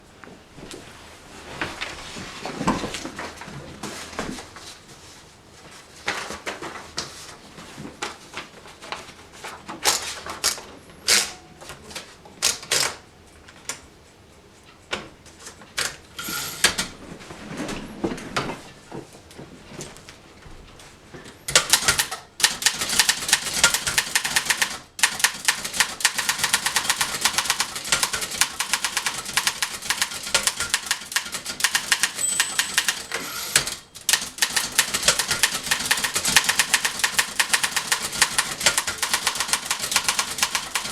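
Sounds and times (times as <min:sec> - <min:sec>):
manual typewriter keys clacking: 0:21.5 - 0:40.9.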